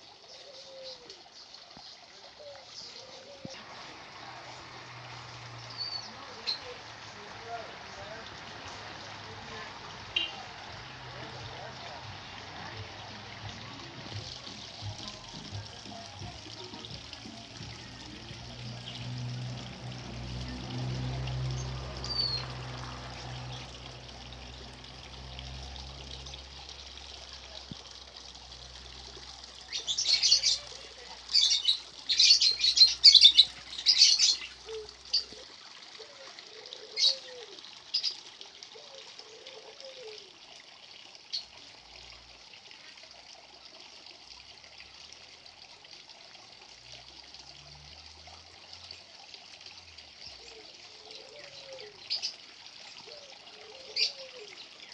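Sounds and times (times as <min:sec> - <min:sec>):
birds chirping: 0:01.8 - 0:27.7, 0:29.5 - 0:35.4.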